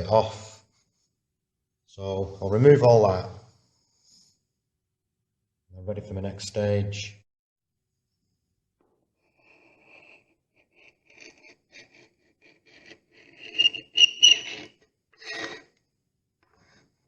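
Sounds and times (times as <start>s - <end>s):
filler being scraped: 9.2s - 15.8s.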